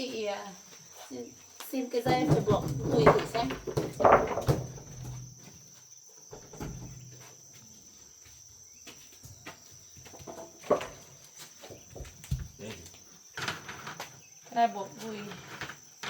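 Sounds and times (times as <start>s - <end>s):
crickets chirring: 0.0s - 16.0s
faint knocks: 2.1s - 5.4s.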